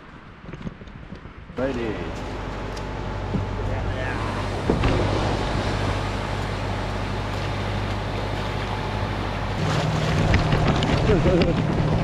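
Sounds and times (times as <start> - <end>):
wind noise: 0.0 - 1.6
higher motor hum: 1.6 - 12.0
low motor hum: 1.6 - 12.0
water noise: 1.6 - 12.0.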